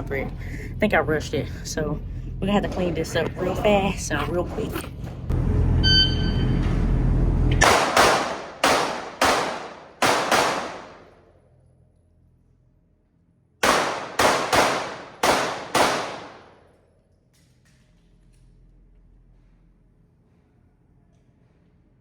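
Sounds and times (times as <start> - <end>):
pistol shots echoing indoors: 7.6 - 11.6, 13.6 - 18.5.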